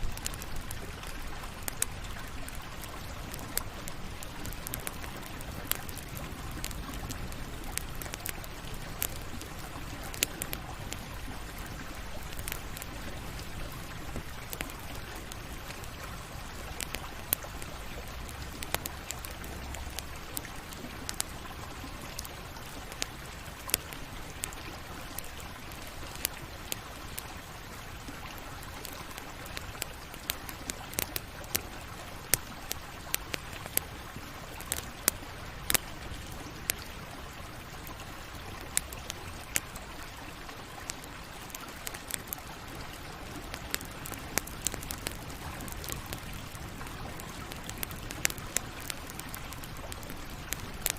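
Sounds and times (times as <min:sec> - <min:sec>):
campfire crackling and popping: 0:00.0 - 0:50.9.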